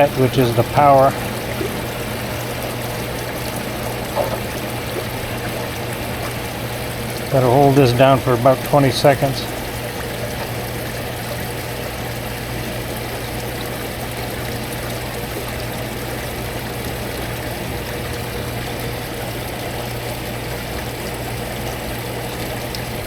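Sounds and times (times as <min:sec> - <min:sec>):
hot tub water circulating: 0:00.0 - 0:23.0
pump hum: 0:00.0 - 0:23.0.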